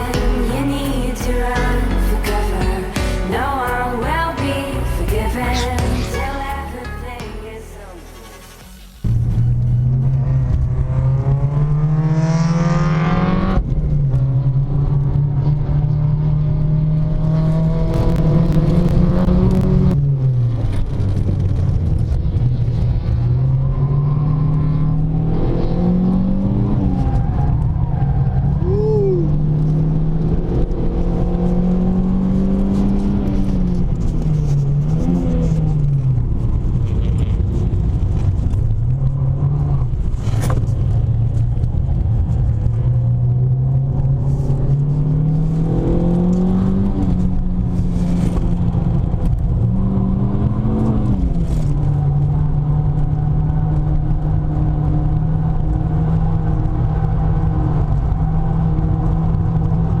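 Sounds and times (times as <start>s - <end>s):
car engine revving: 0.0s - 60.0s.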